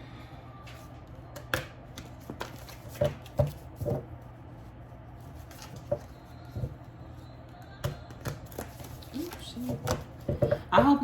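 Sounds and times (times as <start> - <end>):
low room hum: 0.0 - 11.0
cards being shuffled: 0.7 - 4.0, 5.2 - 6.2, 8.1 - 10.3.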